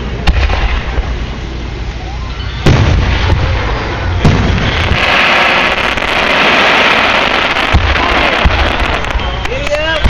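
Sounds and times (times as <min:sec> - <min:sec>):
firework crackling pops: 0:00.0 - 0:01.3, 0:02.7 - 0:10.0
firework booms: 0:00.2 - 0:01.2, 0:02.6 - 0:10.0.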